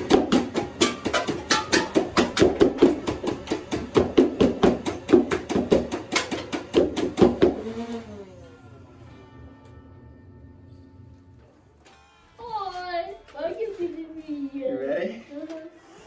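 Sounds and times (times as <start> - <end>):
motor whine winding down: 7.4 - 11.4.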